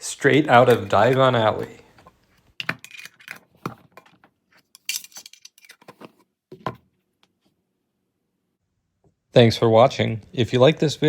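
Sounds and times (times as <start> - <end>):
metal tins clinking: 2.6 - 6.1.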